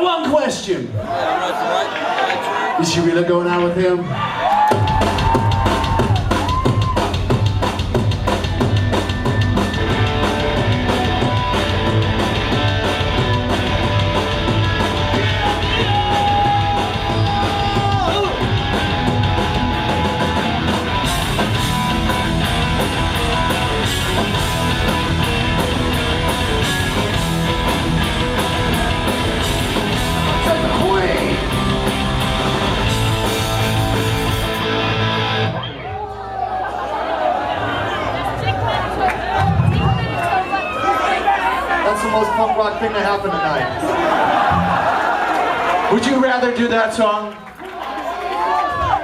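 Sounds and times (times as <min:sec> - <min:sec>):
live rock band playing: 0:04.7 - 0:35.6
person yelling and singing: 0:15.1 - 0:18.9.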